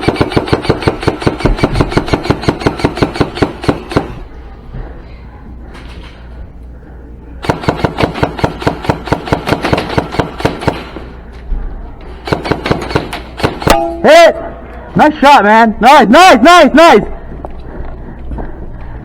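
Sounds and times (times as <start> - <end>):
airsoft guns firing rapid shots: 0.0 - 4.2, 7.4 - 11.1, 12.2 - 13.9.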